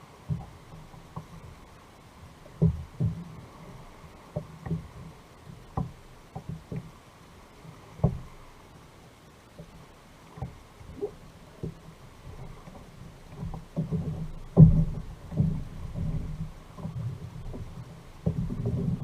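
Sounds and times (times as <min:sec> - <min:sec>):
knocks against kayak hull: 0:08.0 - 0:08.3, 0:13.4 - 0:19.0.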